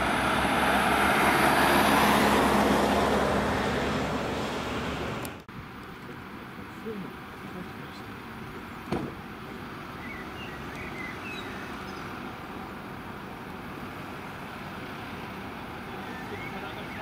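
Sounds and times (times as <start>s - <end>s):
fire engines rumbling: 0.0s - 17.0s
sharp knock: 8.9s - 9.2s.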